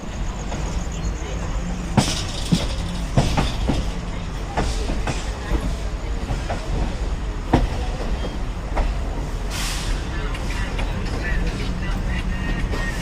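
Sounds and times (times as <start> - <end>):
train wheels rumbling on track: 0.0 - 13.0
wheels clicking over rail joints: 0.4 - 9.3.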